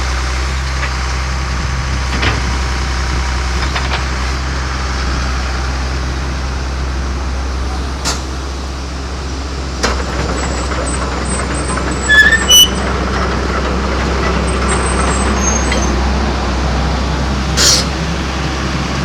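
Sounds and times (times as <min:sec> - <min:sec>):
diesel engine running: 0:00.0 - 0:19.0
high-pitched squeaks: 0:10.4 - 0:12.9, 0:14.7 - 0:16.0.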